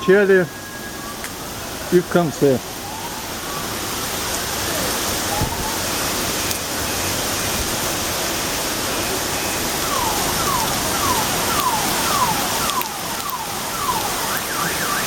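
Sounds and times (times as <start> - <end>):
heavy rain pouring: 0.0 - 15.0
car alarm falling tone: 2.6 - 7.3, 9.2 - 15.0.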